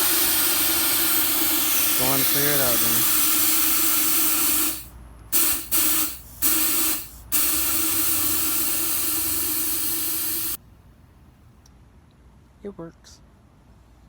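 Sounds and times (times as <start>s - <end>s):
nitrous oxide hissing: 0.0s - 10.6s.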